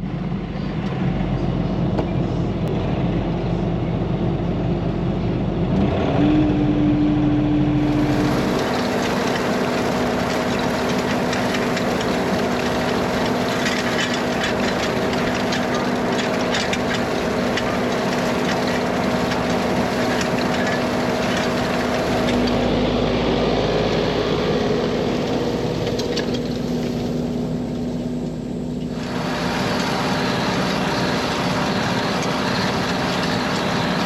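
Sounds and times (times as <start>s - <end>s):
tractor engine drone: 0.0s - 34.0s
machinery clatter and rattle: 7.8s - 34.0s.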